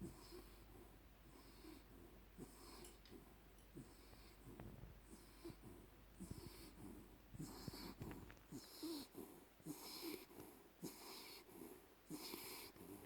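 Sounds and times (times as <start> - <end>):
dog snoring: 0.0 - 13.0.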